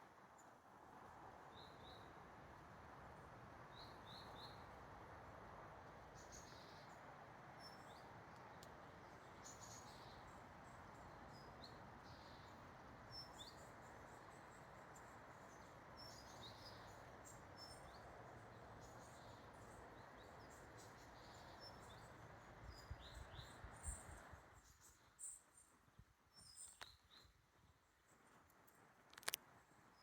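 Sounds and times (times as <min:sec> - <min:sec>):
small birds chirping: 0:07.6 - 0:25.7.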